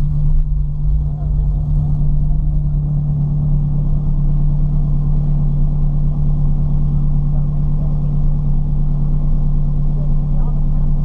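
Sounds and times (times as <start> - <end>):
car engine running steadily: 0.0 - 11.0.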